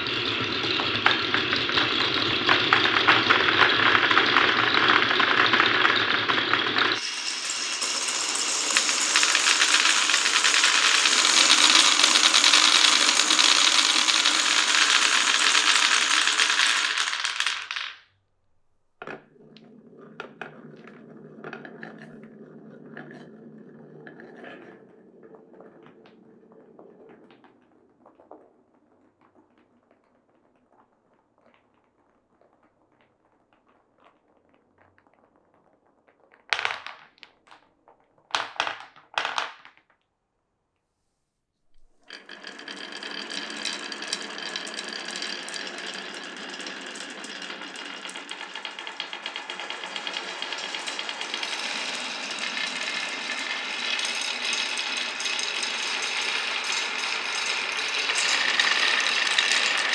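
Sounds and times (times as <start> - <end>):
marbles rolling through wooden run: 0.0 - 18.0, 19.0 - 28.4, 36.5 - 37.2, 41.8 - 59.9.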